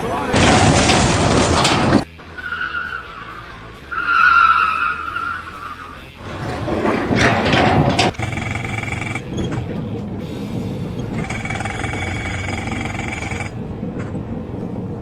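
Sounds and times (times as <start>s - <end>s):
rough noisy rumbling: 0.0s - 15.0s
sharp knocks: 0.4s - 2.1s, 6.2s - 15.0s
high squeal: 0.4s - 15.0s.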